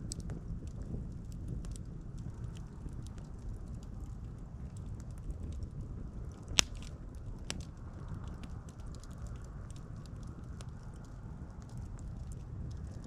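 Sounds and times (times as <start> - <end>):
campfire crackling: 0.0 - 13.0
loud sharp pop: 6.6 - 6.9.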